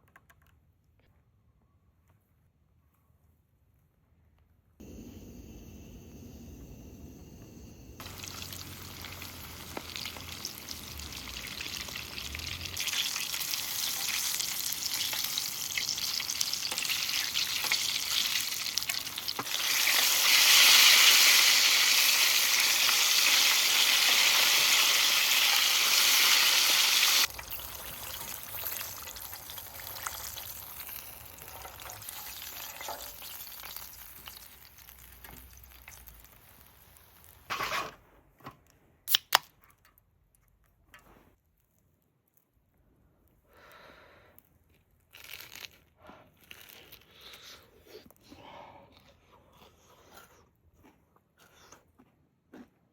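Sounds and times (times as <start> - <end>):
chicken sizzling in hot oil: 7.9 - 37.9.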